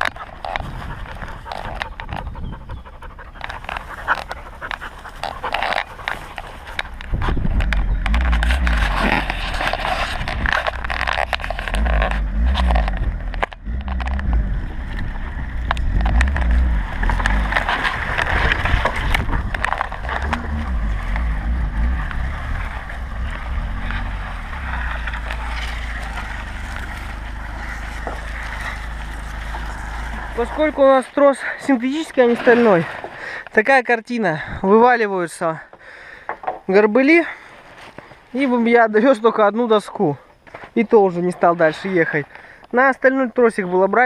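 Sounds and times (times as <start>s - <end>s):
wooden slabs scraping over ground: 0.0s - 33.9s, 35.7s - 44.0s
car engine revving in low gear: 7.0s - 30.8s.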